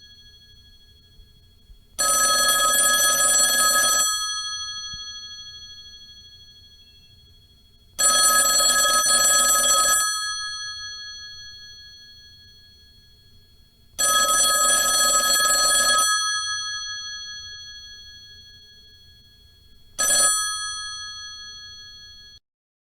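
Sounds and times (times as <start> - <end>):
telephone bell ringing: 2.0 - 6.7, 8.0 - 12.9, 14.0 - 22.4.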